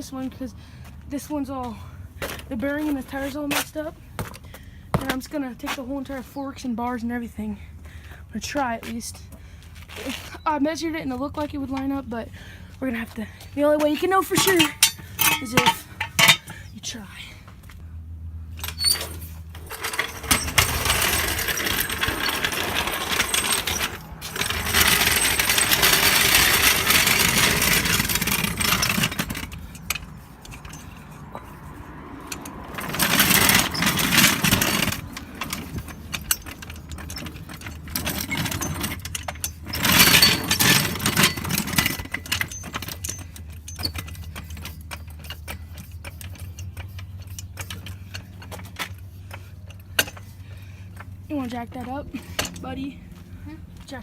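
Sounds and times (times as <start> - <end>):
low steady hum: 0.0 - 54.0
metal clinking and scraping: 13.9 - 16.6, 18.6 - 53.8.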